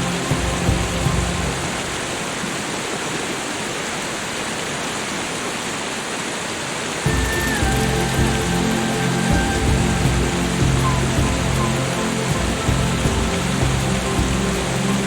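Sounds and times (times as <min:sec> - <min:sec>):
soft music of low notes: 0:00.0 - 0:03.0, 0:07.0 - 0:15.0
falling water hiss: 0:00.0 - 0:15.0.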